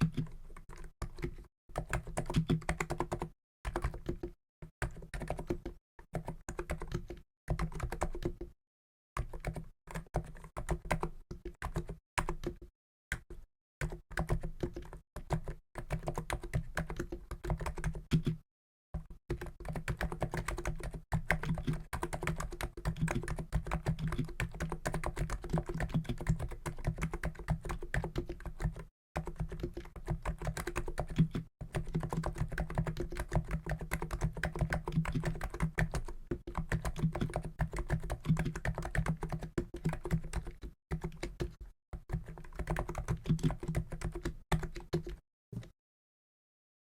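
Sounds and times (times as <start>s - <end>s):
keyboard typing: 0.0s - 8.5s, 9.2s - 18.4s, 19.3s - 45.7s.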